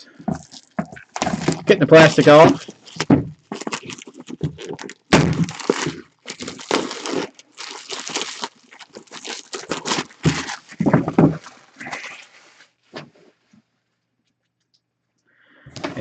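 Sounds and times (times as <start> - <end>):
box handling thumps: 0.2 - 7.2, 9.7 - 11.5
plastic wrap crackling: 0.2 - 12.7.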